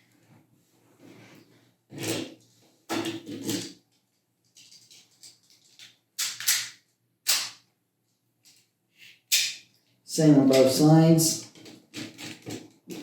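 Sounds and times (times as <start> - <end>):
plastic parts rattling: 2.0 - 6.8, 11.4 - 13.0.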